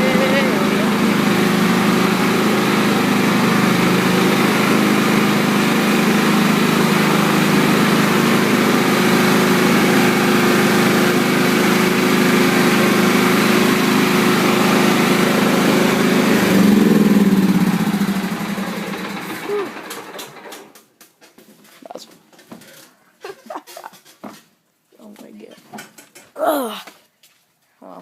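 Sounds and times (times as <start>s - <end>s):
riding lawn mower engine running: 0.0s - 20.8s.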